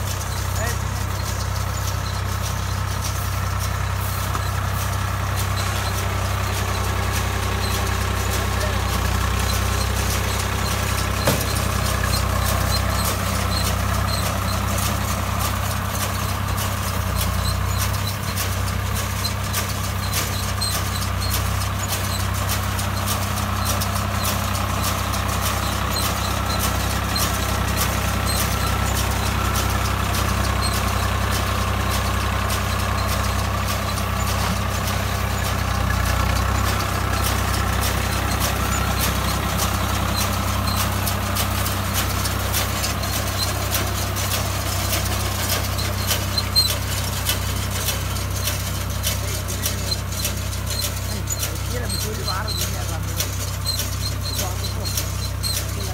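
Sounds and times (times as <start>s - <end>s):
tractor diesel engine running: 0.0s - 55.9s
light regular ticking: 0.1s - 55.9s.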